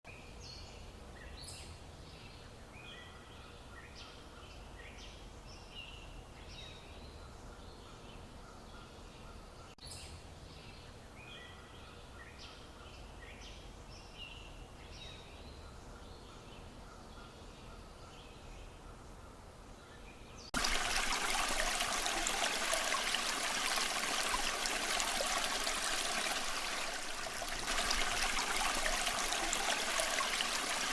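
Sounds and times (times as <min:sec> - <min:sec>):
birds chirping: 0:19.9 - 0:30.9
stream rushing: 0:20.6 - 0:30.9.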